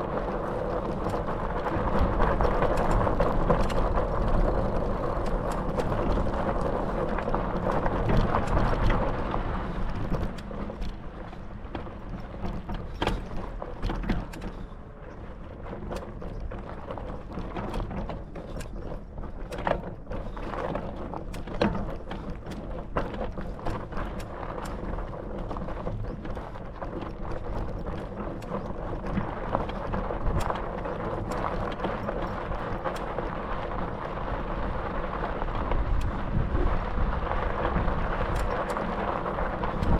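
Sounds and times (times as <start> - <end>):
bicycle tyre noise and rattling: 0.0 - 39.9
wind on microphone: 23.8 - 39.9.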